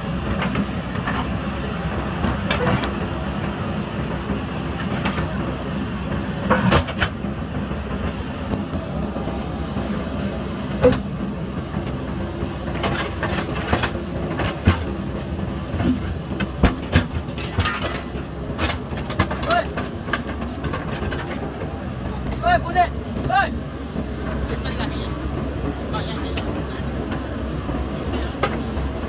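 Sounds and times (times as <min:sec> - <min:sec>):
diesel engine running: 0:00.0 - 0:29.0
bucket knocking and clanking: 0:12.8 - 0:23.4.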